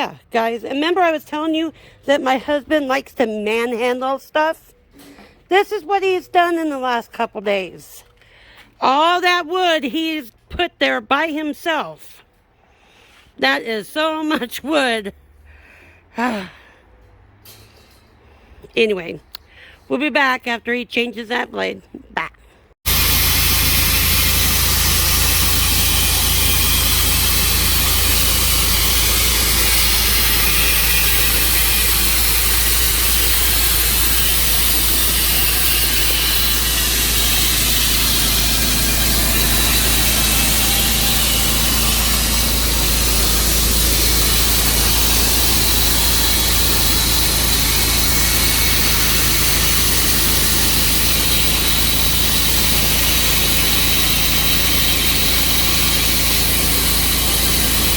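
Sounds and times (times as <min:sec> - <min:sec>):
gasoline engine running steadily: 0:22.9 - 0:57.9.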